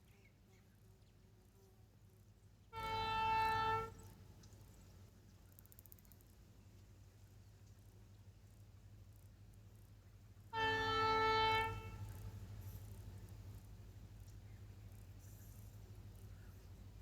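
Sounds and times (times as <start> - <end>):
locomotive horn blast: 2.7 - 4.1, 10.5 - 12.7.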